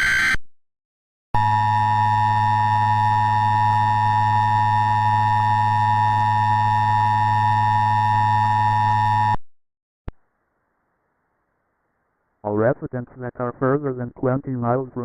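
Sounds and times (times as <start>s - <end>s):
two-tone alarm: 1.4s - 9.4s.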